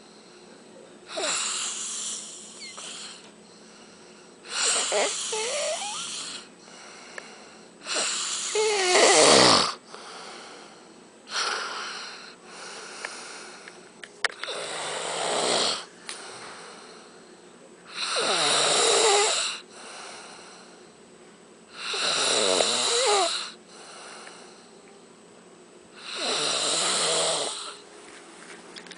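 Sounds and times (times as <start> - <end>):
quiet breathing: 0.0 - 8.5, 9.8 - 15.1, 15.8 - 18.0, 19.6 - 21.0, 23.4 - 25.1
man snoring loudly: 1.1 - 3.2, 4.5 - 6.5, 7.8 - 9.8, 14.5 - 15.9, 17.9 - 19.6, 21.7 - 23.6, 26.0 - 27.8.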